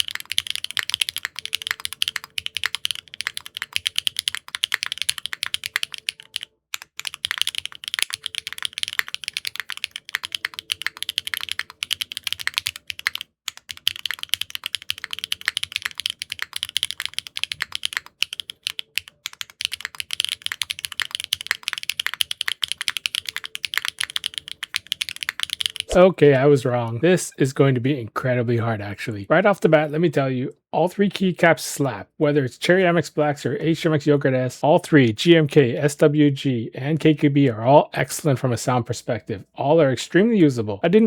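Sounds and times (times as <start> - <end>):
fast typing on mechanical keyboard: 0.0 - 25.9.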